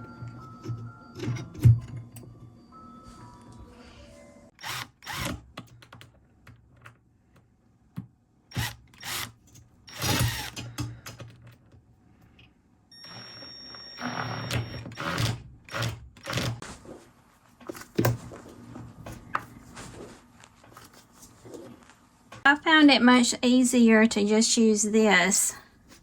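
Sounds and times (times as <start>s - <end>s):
power drill driving screws: 4.5s - 5.4s, 8.5s - 10.7s, 13.0s - 16.6s.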